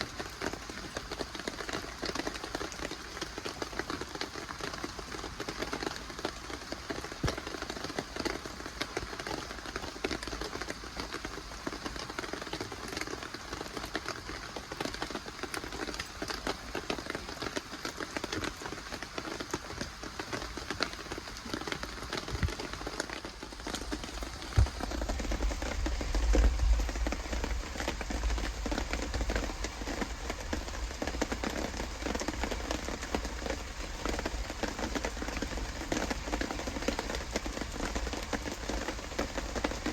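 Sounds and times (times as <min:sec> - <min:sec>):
steady rain falling: 0:00.0 - 0:39.9
low rumble: 0:23.9 - 0:32.0.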